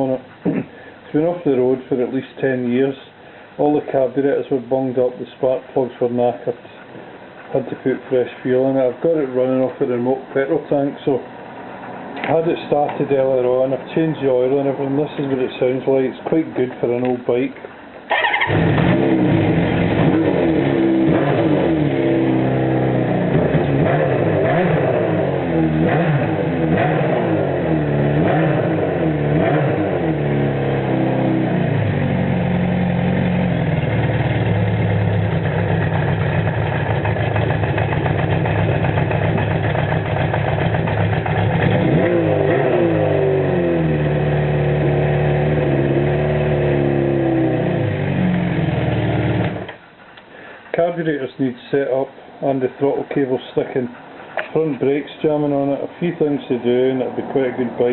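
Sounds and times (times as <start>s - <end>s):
motorcycle engine revving and idling: 18.1s - 49.8s.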